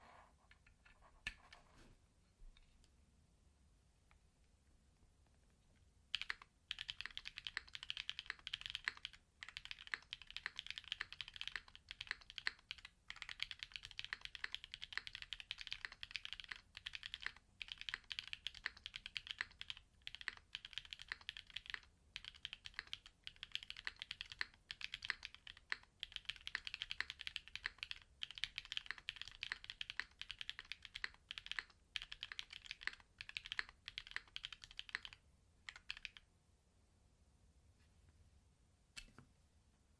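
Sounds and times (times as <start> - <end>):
mechanical keyboard typing: 6.1 - 36.3.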